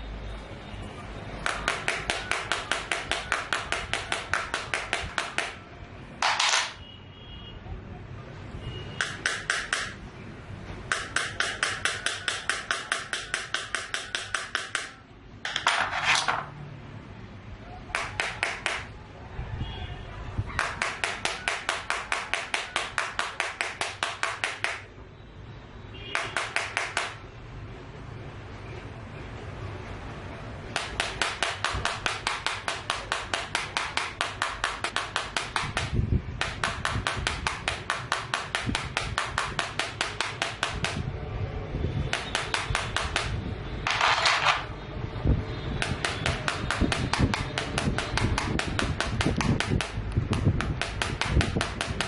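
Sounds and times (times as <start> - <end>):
tool scraping glass screen: 15.5 - 16.6.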